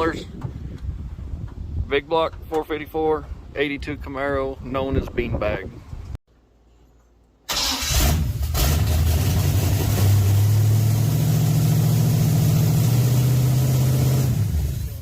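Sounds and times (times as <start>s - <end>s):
car engine starting and running: 7.5s - 15.0s.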